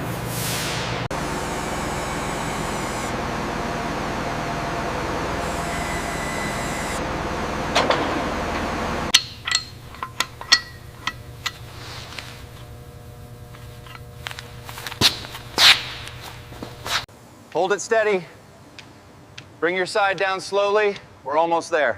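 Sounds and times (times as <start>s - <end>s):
loud mechanical rumble: 0.0s - 17.0s
sharp knocks and clanks: 7.7s - 12.4s
faint hum: 9.0s - 20.0s.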